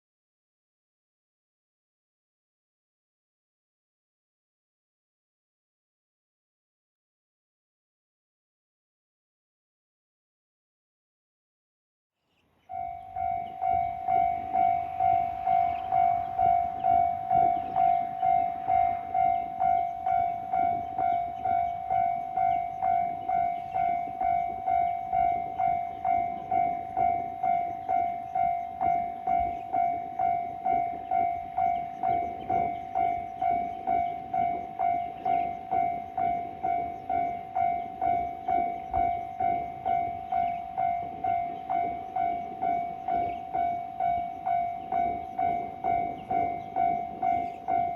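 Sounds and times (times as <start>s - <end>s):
level crossing bell clanging: 12.7s - 47.9s.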